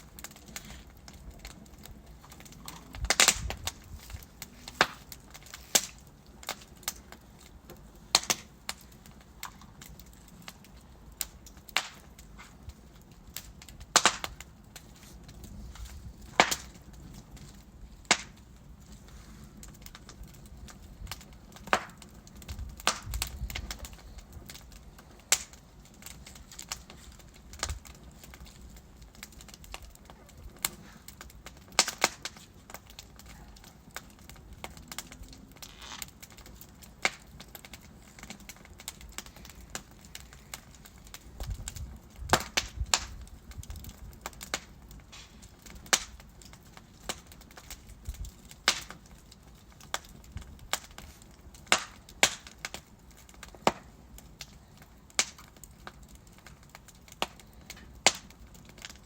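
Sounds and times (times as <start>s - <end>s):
logs crackling in fireplace: 0.0s - 59.0s
low rumble of fire: 0.0s - 59.0s.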